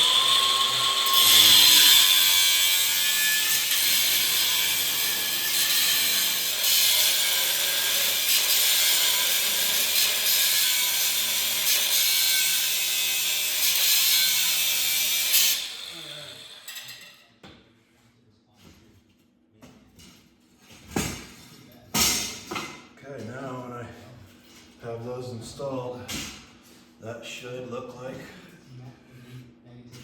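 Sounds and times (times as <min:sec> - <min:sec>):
electric power tool motor: 0:00.0 - 0:11.9.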